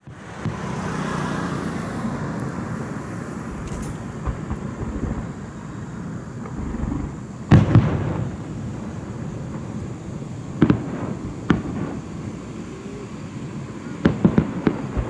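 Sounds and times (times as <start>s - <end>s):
small firework crack: 0.0s - 1.1s, 3.5s - 5.7s, 6.4s - 9.8s, 10.6s - 13.0s, 13.8s - 15.0s
low outdoor rumble: 1.7s - 15.0s
firework shell bang: 3.5s - 5.4s.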